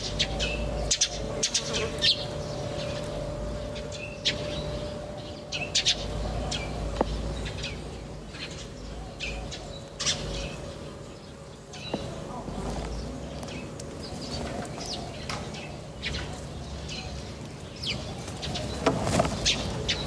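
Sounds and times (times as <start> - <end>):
faint steady hum: 0.0 - 20.0
small birds chirping: 0.0 - 20.0.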